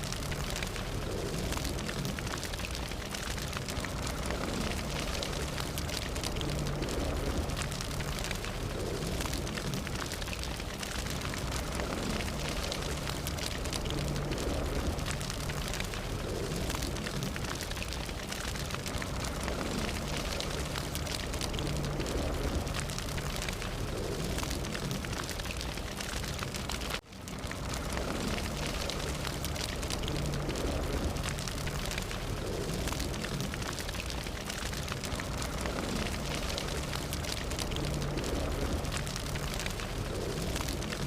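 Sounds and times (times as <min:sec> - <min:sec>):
fire crackling and popping: 0:00.0 - 0:41.0.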